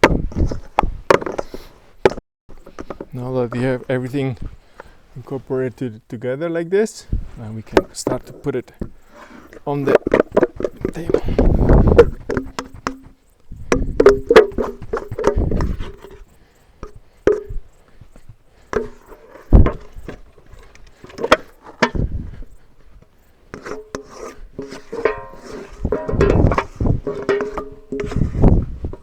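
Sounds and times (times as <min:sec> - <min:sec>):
spatula scraping dough from bowl: 0:23.5 - 0:29.0.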